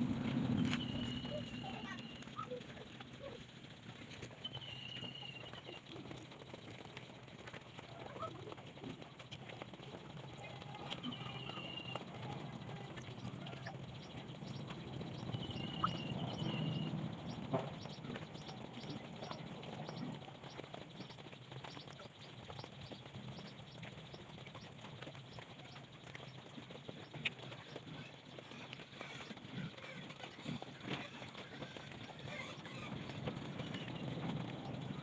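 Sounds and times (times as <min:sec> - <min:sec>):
steady background noise: 0:00.0 - 0:35.0
high bird-like chirps: 0:00.6 - 0:03.0, 0:14.4 - 0:20.1.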